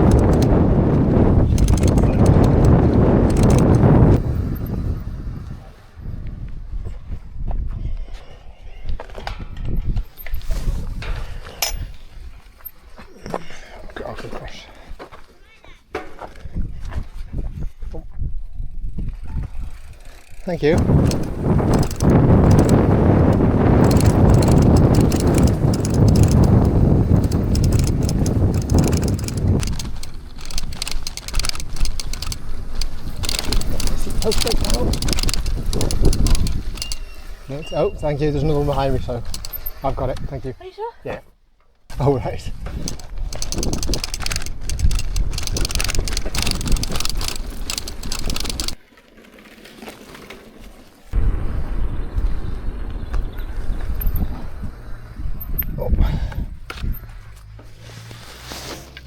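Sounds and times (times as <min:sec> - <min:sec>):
bike rattling and clicking: 0:00.0 - 0:05.1, 0:19.1 - 0:37.3, 0:39.1 - 0:39.8, 0:42.6 - 0:50.8, 0:52.9 - 0:55.8
wind rumbling on microphone: 0:00.0 - 0:12.6, 0:16.4 - 0:40.5, 0:41.9 - 0:48.8, 0:51.1 - 0:58.4.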